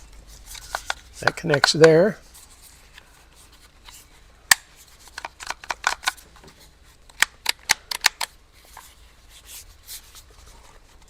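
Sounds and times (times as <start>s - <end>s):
plastic parts clicking together: 0.5s - 2.0s, 3.9s - 6.5s, 7.1s - 8.9s.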